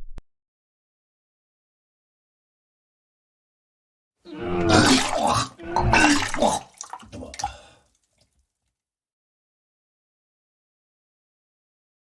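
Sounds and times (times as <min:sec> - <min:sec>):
straining voice-like noise: 0:04.3 - 0:07.8
water splashing: 0:04.5 - 0:08.3.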